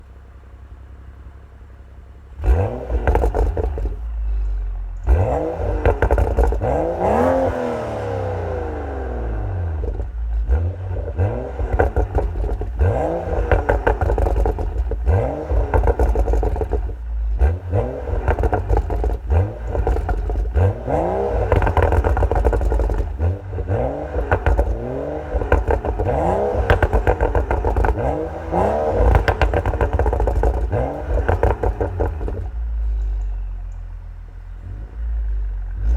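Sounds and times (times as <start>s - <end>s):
car engine revving: 2.3s - 35.9s
exhaust crackles and pops: 2.4s - 35.9s.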